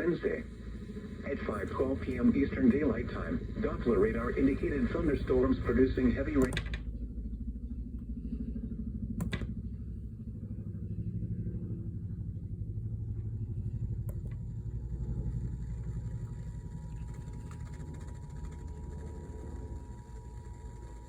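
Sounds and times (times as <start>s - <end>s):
low fluttering rumble: 0.0s - 21.0s
sharp clicks: 6.2s - 6.8s.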